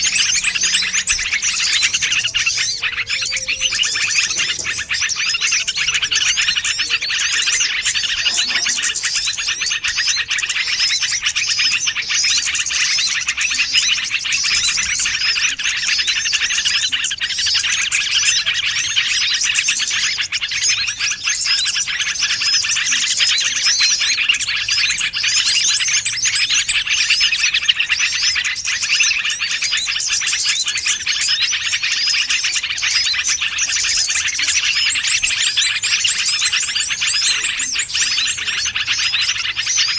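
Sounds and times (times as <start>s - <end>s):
songbirds twittering: 0.0s - 39.9s.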